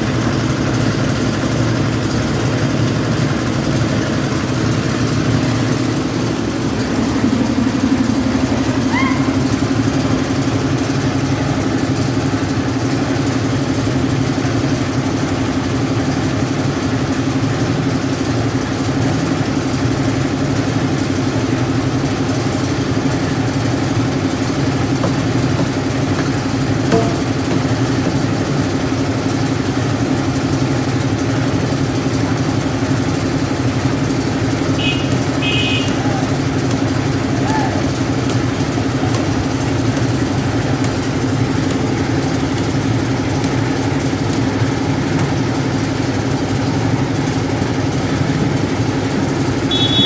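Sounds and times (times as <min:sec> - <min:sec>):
concrete mixer engine droning: 0:00.0 - 0:50.0
brief knock: 0:25.0 - 0:28.6.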